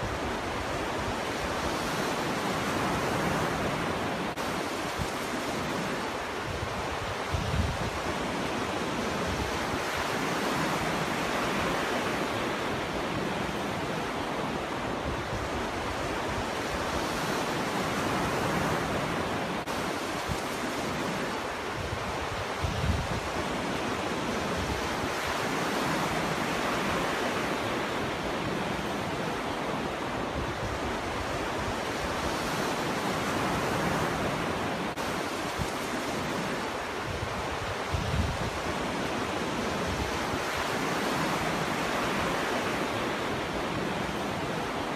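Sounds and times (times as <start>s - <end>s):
ocean waves breaking: 0.0s - 44.9s.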